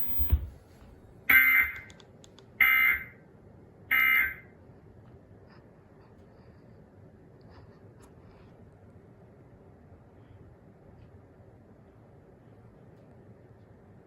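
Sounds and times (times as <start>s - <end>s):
buzzy digital data bursts: 0.0s - 0.4s.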